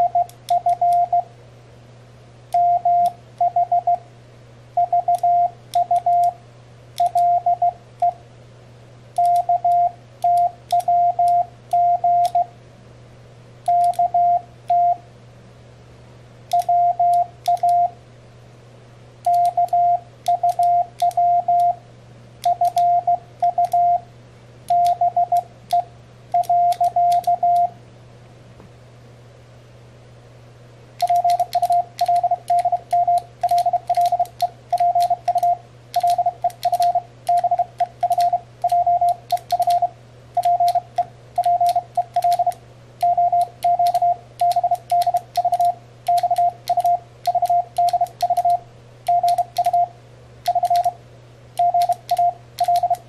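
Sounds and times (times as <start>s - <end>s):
morse code beeps: 0.0s - 1.3s, 2.6s - 4.0s, 4.8s - 6.4s, 7.0s - 8.2s, 9.2s - 12.5s, 13.7s - 15.0s, 16.5s - 18.0s, 19.3s - 21.8s, 22.5s - 24.0s, 24.7s - 27.7s, 31.0s - 49.9s, 50.5s - 51.0s, 51.6s - 53.0s
faint low hum: 0.0s - 53.0s
switches clicking: 9.2s - 12.4s, 13.7s - 14.1s, 16.5s - 17.8s, 19.2s - 21.7s, 22.4s - 22.9s, 23.5s - 23.8s, 26.4s - 27.7s, 31.0s - 39.8s, 40.4s - 49.8s, 50.4s - 51.0s, 51.6s - 53.0s.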